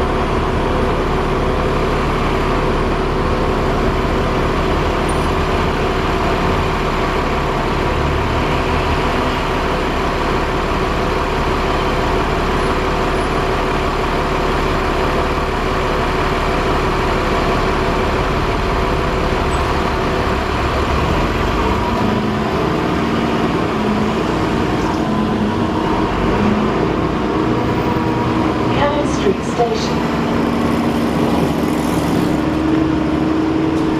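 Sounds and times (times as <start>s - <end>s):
bus drivetrain whirring: 0.0s - 33.9s
engine and road rumble: 0.0s - 33.9s.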